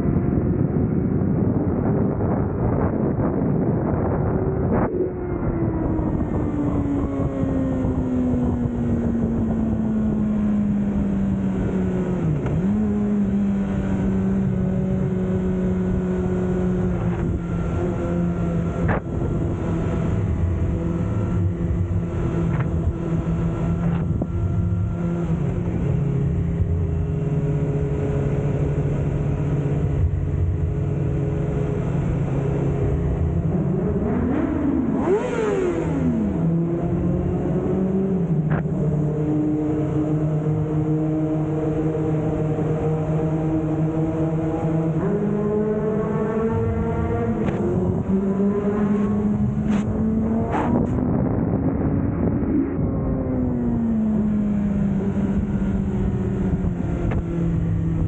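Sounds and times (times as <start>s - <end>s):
motorcycle engine while riding: 0.0s - 58.0s.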